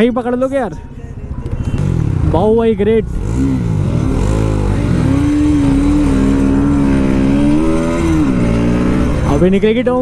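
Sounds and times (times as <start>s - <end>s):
motorcycle engine running: 1.4s - 10.0s.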